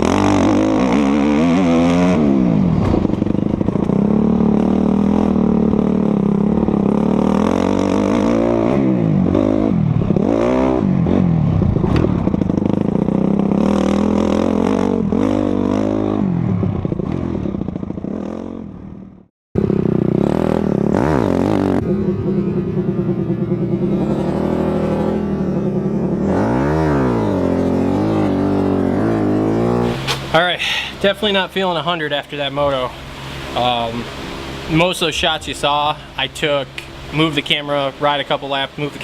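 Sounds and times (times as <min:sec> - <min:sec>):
motocross bike engine revving: 0:00.0 - 0:39.0.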